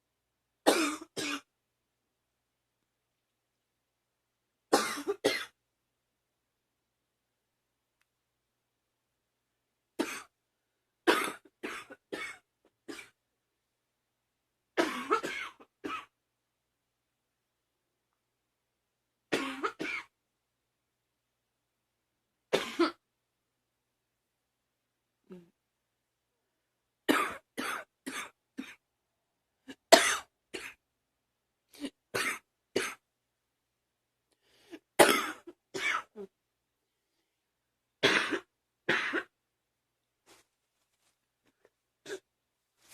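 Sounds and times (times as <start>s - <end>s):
girl coughing: 0.7s - 1.5s, 4.7s - 5.6s, 14.8s - 16.1s, 22.6s - 23.0s, 29.7s - 30.8s, 35.0s - 36.3s.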